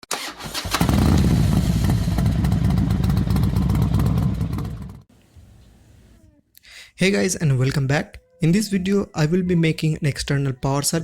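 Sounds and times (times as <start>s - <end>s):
motorcycle engine revving: 0.2s - 5.1s.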